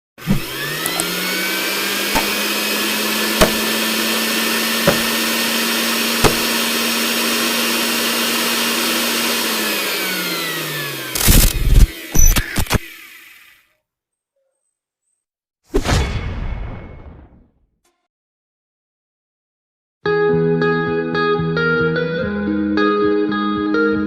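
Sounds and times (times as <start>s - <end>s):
electric power tool motor: 0.2s - 13.8s
sharp clicks or knocks: 0.3s - 1.2s, 2.1s - 2.4s, 3.4s - 3.8s, 4.8s - 5.3s, 6.2s - 6.6s.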